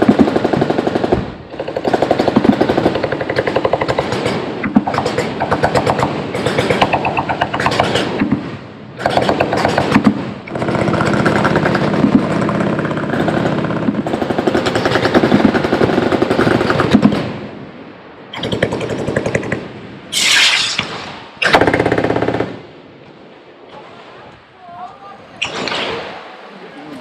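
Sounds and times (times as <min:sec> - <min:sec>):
automatic machine-gun fire: 0:00.0 - 0:08.2, 0:09.0 - 0:17.3, 0:18.4 - 0:19.6, 0:21.4 - 0:22.6
sharp hissing rush: 0:19.9 - 0:21.8.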